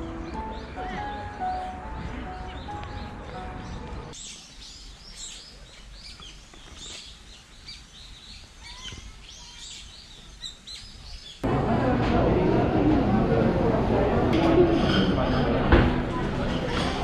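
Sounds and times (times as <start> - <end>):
small birds chirping: 0.0 - 11.4.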